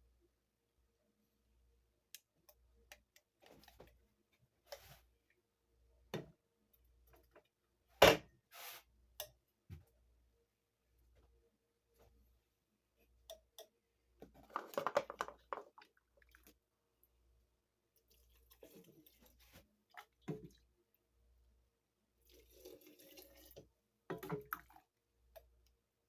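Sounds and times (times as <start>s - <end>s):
objects clicking and knocking: 14.2s - 15.8s.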